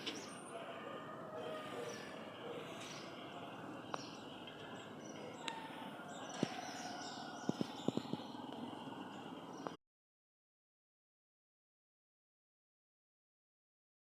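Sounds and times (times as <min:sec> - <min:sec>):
faint bird chirps: 0:00.0 - 0:09.8
outdoor background noise: 0:00.0 - 0:09.8.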